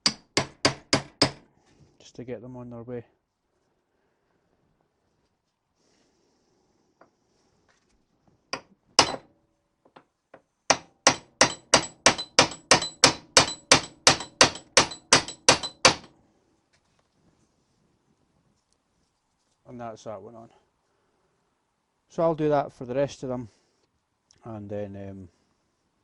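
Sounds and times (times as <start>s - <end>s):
hammer tapping metal: 0.0s - 1.4s, 8.6s - 9.3s, 10.7s - 16.1s.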